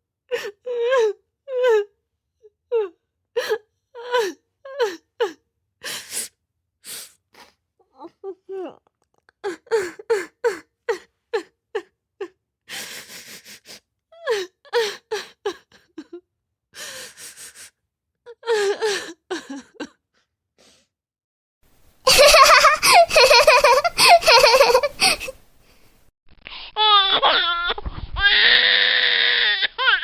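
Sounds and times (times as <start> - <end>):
person sobbing: 7.8 - 11.9, 14.2 - 16.2, 18.3 - 20.0, 22.1 - 25.4.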